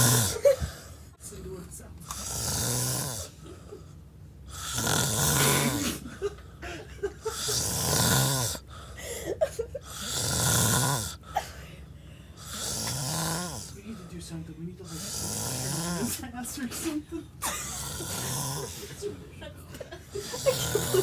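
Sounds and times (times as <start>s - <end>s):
man snoring heavily: 0.0s - 0.8s, 2.1s - 3.4s, 4.5s - 6.2s, 7.2s - 9.0s, 9.8s - 11.3s, 12.4s - 13.9s, 14.9s - 16.2s, 17.4s - 19.0s, 20.2s - 21.0s.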